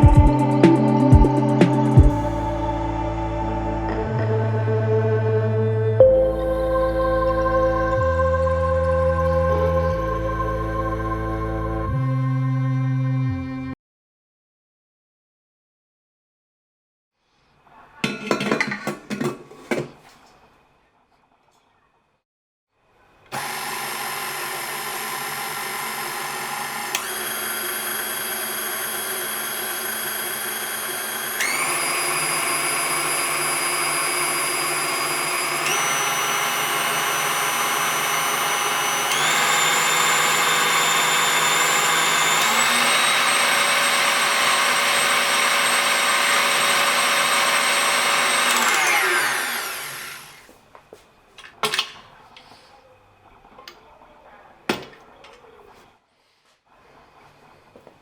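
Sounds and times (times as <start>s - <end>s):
stand mixer motor hum: 23.4s - 50.5s.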